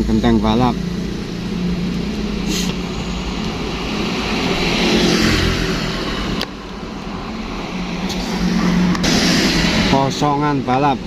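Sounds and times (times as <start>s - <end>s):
truck passing at speed: 0.0s - 11.0s.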